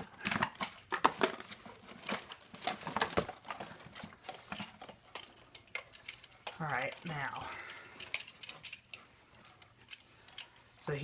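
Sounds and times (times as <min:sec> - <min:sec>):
cardboard and plastic clicks: 0:00.0 - 0:07.1
packaging rustling and crinkling: 0:00.0 - 0:11.0.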